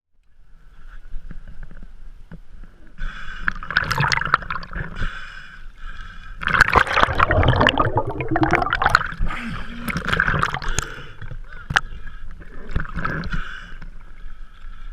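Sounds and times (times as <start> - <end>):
sea water gurgling and splashing: 3.5 - 5.2, 6.4 - 11.8, 12.4 - 14.2.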